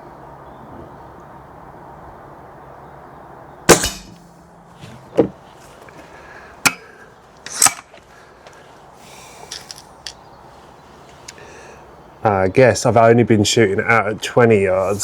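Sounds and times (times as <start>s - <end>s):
air rifle shot crack: 3.7s - 4.3s.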